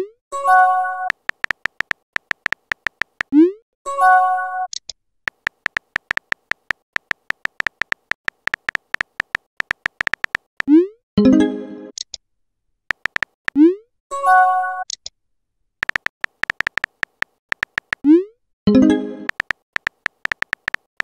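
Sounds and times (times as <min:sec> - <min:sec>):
typing clicks: 0:01.1 - 0:03.3, 0:05.3 - 0:10.7, 0:12.9 - 0:13.6, 0:15.8 - 0:18.0, 0:19.3 - 0:21.0.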